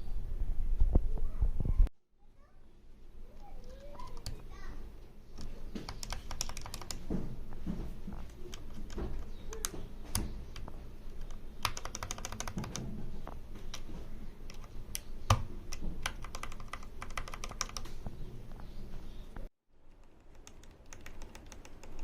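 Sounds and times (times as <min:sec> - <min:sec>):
keyboard keys clicking: 0:03.6 - 0:04.4, 0:05.4 - 0:07.1, 0:08.2 - 0:18.0, 0:19.9 - 0:22.0.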